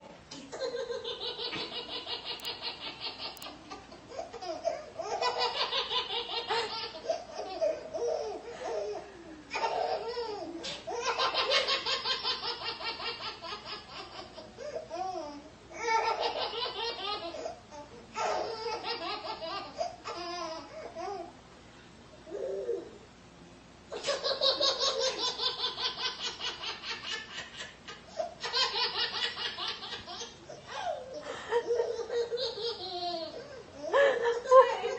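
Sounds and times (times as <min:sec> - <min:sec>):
baby laughing: 0:00.5 - 0:14.5, 0:23.9 - 0:34.9.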